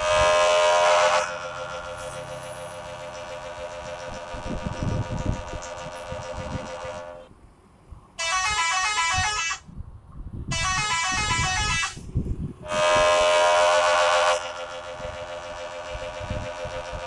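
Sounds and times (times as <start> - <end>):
ship's musical horn: 0.0 - 7.3, 8.2 - 9.6, 10.5 - 12.0, 12.6 - 17.0
low background rumble: 0.0 - 8.3.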